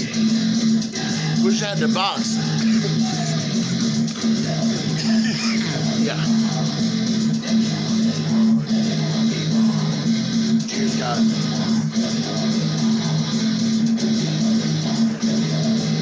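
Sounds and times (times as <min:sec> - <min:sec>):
guitar music: 0:00.8 - 0:11.8.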